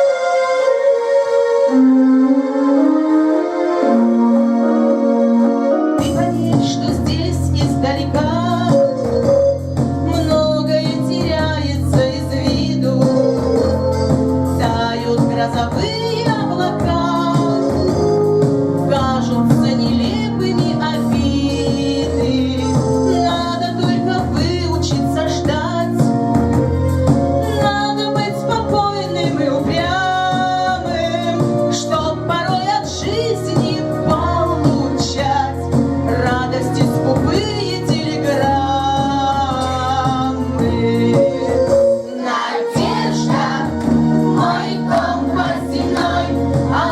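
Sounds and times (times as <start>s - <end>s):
instrumental backing track: 0.0s - 46.9s
keyboard chords and bass: 0.0s - 46.9s
woman singing: 6.0s - 9.2s, 10.0s - 18.2s, 18.8s - 26.0s, 27.5s - 43.8s, 44.4s - 46.9s
person singing: 27.7s - 43.7s.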